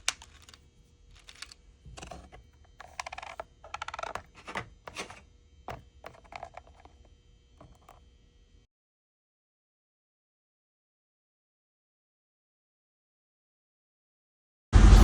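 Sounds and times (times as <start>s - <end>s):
clicks and taps of handling: 0.0s - 0.6s, 1.2s - 7.0s
faint steady hum: 0.0s - 8.7s.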